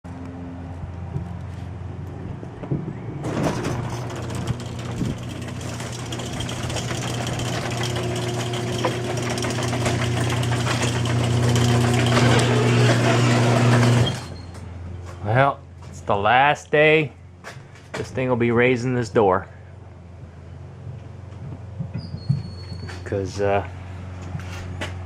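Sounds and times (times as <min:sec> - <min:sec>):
rattle: 0:03.2 - 0:14.5
garage door opener motor humming: 0:03.2 - 0:14.6.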